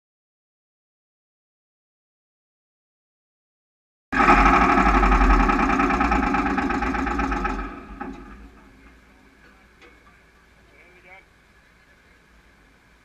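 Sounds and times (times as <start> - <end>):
excavator diesel engine running: 4.2 - 11.0.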